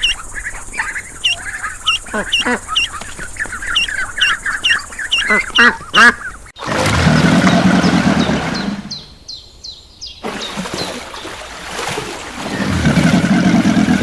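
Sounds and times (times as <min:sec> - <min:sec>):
small bird chirping: 0:00.0 - 0:06.6, 0:07.5 - 0:11.4
low rumbling noise: 0:12.4 - 0:14.0.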